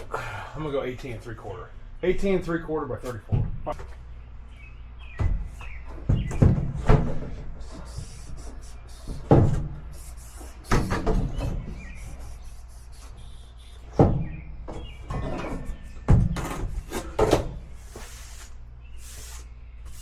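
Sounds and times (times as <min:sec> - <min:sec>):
knocks and thumps: 0:03.3 - 0:04.0, 0:05.1 - 0:08.2, 0:09.0 - 0:09.9, 0:10.7 - 0:11.8, 0:13.9 - 0:17.6
rustling and scraping: 0:05.2 - 0:20.0.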